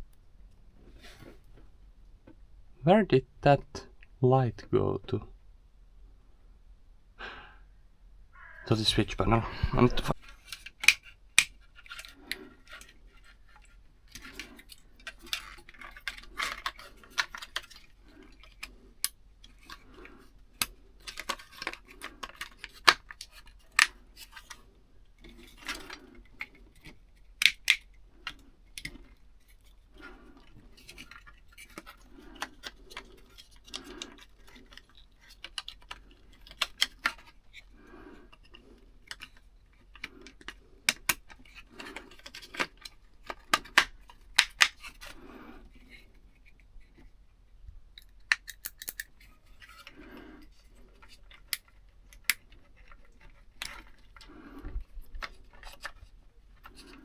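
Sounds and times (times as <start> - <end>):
rustling: 0.0 - 2.4, 8.3 - 47.5
sharp clicks and metallic ticks: 48.0 - 49.1.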